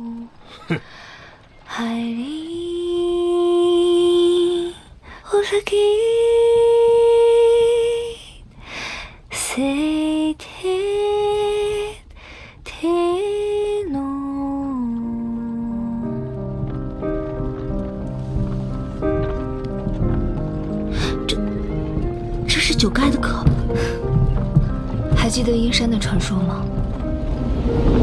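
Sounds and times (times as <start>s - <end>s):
woman singing wordless melody: 0.0s - 0.5s, 1.6s - 8.5s, 9.3s - 16.7s.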